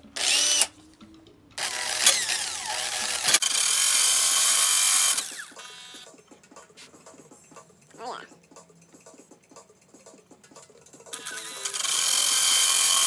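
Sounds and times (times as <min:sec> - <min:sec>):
power tool grinding steel: 0:00.1 - 0:00.7, 0:01.6 - 0:06.0, 0:11.2 - 0:13.0.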